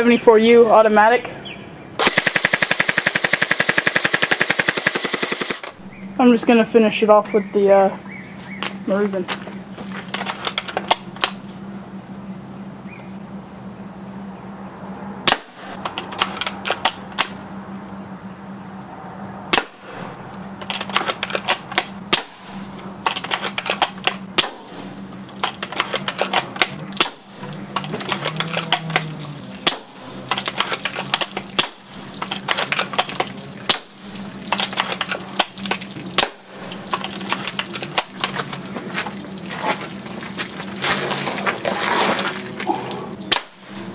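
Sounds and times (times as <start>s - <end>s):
steady low hum: 0.0s - 43.9s
airsoft rifle shots: 2.0s - 5.8s, 15.2s - 17.4s, 19.5s - 20.1s, 20.9s - 24.9s
rapid clicking: 2.0s - 5.8s.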